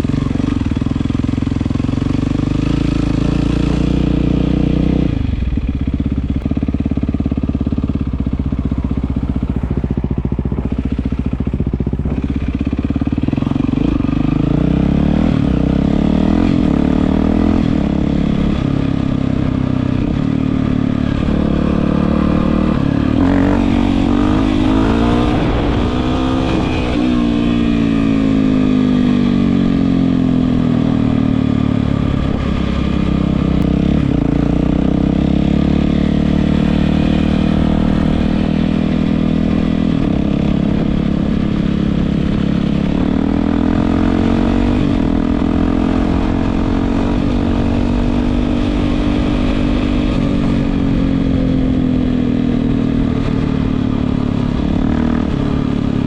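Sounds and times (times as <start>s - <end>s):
dirt bike engine revving: 12.1s - 51.1s.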